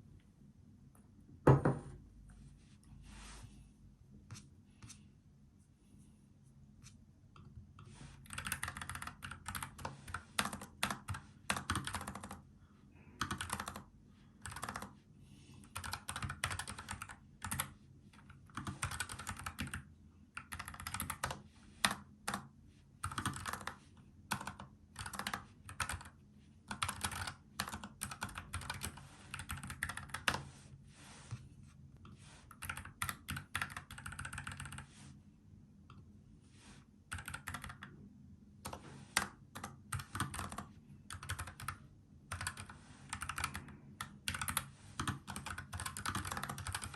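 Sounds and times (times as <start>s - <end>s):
mechanical keyboard typing: 8.2s - 12.4s, 13.2s - 14.9s, 15.7s - 30.4s, 32.5s - 34.8s, 37.1s - 37.9s, 38.7s - 46.9s.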